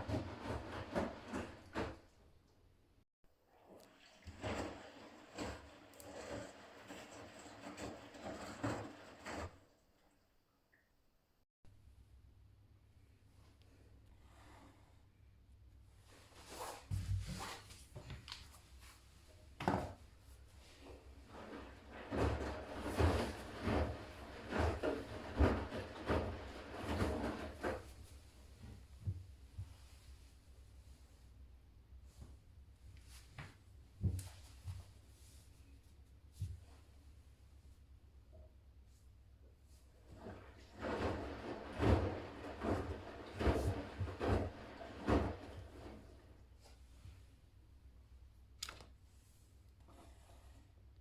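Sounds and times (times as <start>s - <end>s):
washing machine laundry swishing: 0.0s - 2.2s, 4.0s - 9.8s, 16.0s - 31.4s, 39.6s - 47.3s.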